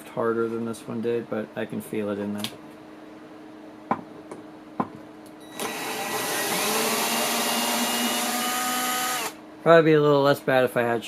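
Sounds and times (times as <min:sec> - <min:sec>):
power drill driving screw into wood: 0:05.5 - 0:09.4.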